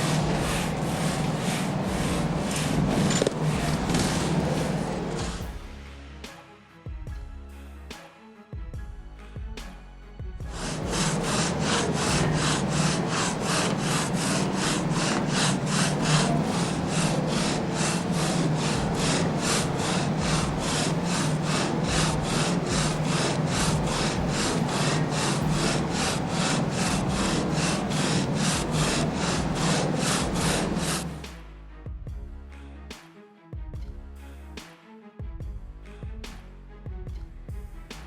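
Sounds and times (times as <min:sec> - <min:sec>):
saw cutting through timber: 0:00.0 - 0:05.4, 0:10.5 - 0:31.2.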